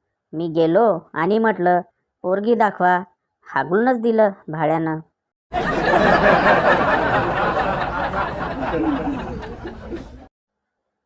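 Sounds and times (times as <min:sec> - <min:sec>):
audience laughter: 0:05.5 - 0:10.3.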